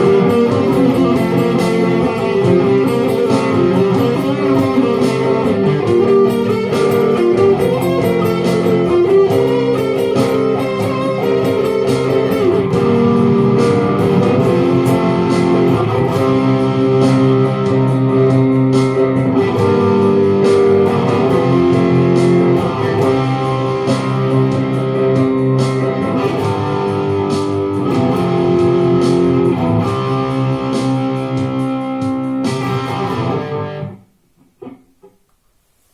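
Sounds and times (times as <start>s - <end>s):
guitar strumming and picking chords: 0.0s - 35.4s.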